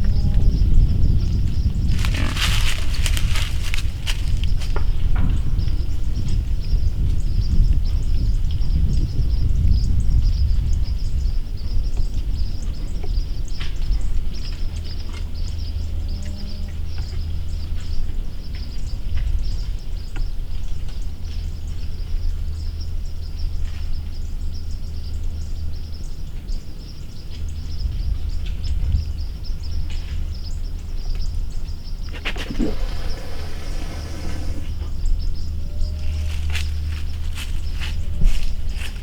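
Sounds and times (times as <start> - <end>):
rustling: 1.9 - 4.8, 32.1 - 34.8.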